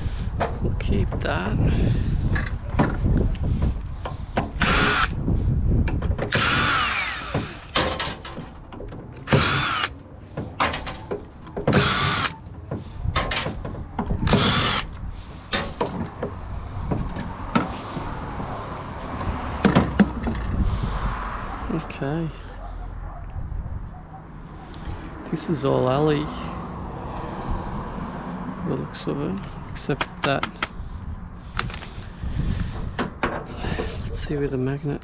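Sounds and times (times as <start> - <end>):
power drill whining: 4.6 - 5.2, 6.3 - 8.2, 9.2 - 9.9, 11.7 - 12.4, 14.3 - 15.0
metal parts knocking: 6.0 - 12.5, 13.2 - 14.9, 15.5 - 16.2.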